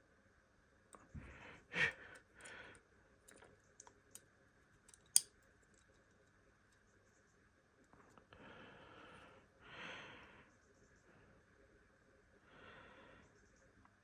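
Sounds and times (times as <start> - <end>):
small parts tapping and clicking: 2.1 - 6.9.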